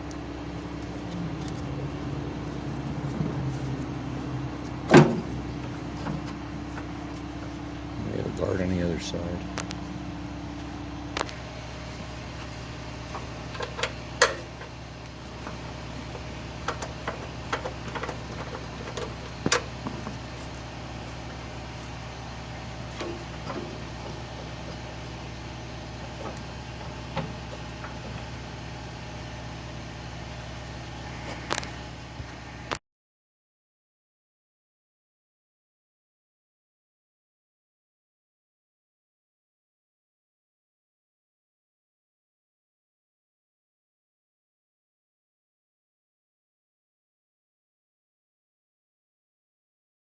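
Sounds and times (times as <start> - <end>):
steady low hum: 0.0 - 32.8.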